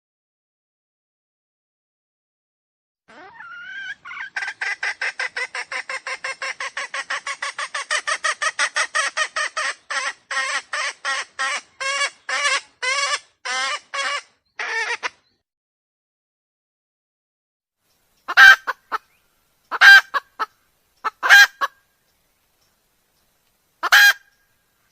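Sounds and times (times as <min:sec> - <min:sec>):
wild chicken calling: 0:03.1 - 0:15.3, 0:18.2 - 0:21.9, 0:23.8 - 0:24.4.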